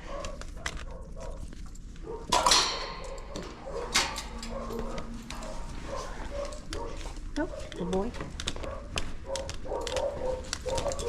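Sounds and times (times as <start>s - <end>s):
dog barking sharply: 3.2s - 7.8s, 8.6s - 11.0s.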